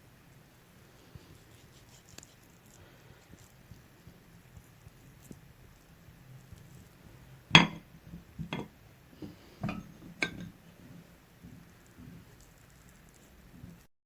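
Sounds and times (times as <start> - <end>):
kitchen items clinking on cookware: 7.6 - 7.8, 8.4 - 8.7, 9.6 - 10.6.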